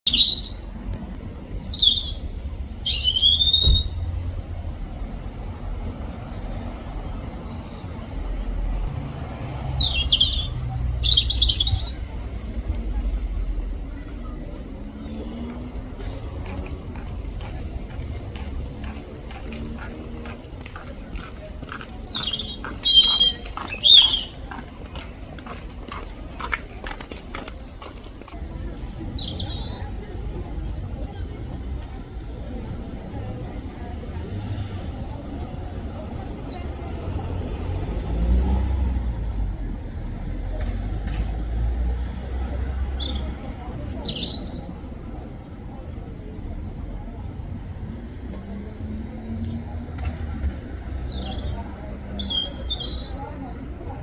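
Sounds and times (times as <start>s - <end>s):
robin singing: 0.0s - 4.2s, 9.4s - 12.2s, 21.7s - 24.6s, 28.4s - 29.9s, 36.4s - 37.4s, 42.6s - 44.8s, 51.0s - 53.3s
low traffic rumble: 0.0s - 54.0s.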